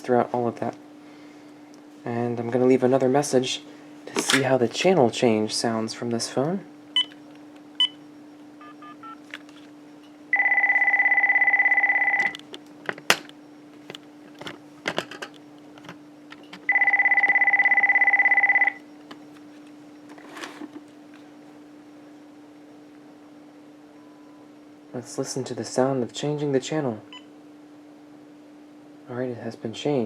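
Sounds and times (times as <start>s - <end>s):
steady low hum: 0.0s - 30.0s
phone keypad tones: 7.0s - 8.0s, 8.6s - 9.3s, 10.3s - 13.3s, 15.8s - 19.6s
electronic telephone ringer warbling: 8.6s - 9.3s, 10.3s - 12.5s, 16.7s - 18.8s
handling clicks: 12.2s - 16.7s.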